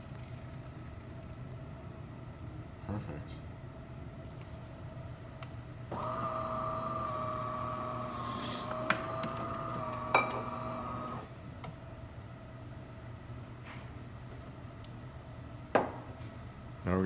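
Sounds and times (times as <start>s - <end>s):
espresso machine motor whirring: 5.9s - 11.4s.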